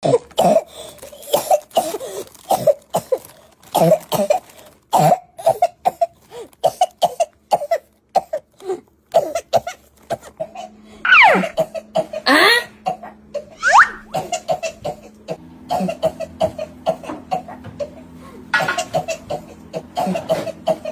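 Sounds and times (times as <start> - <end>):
person coughing: 0.0 - 17.9, 18.6 - 20.9
pitched sliding sound falling: 13.6 - 14.1.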